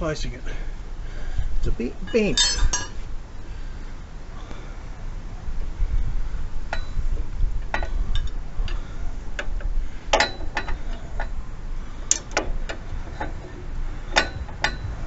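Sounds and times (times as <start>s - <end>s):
low steady rumble: 0.0s - 15.0s
metallic clicks and clinks: 2.1s - 3.0s.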